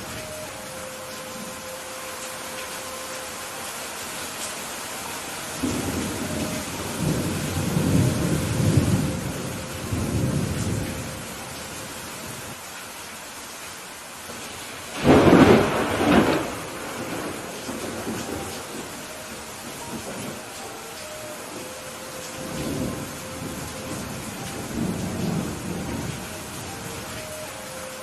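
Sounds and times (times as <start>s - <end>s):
steady rain: 0.0s - 28.0s
thunder rumbling: 5.0s - 11.6s, 14.9s - 28.0s
loud thunderclap: 15.0s - 18.4s.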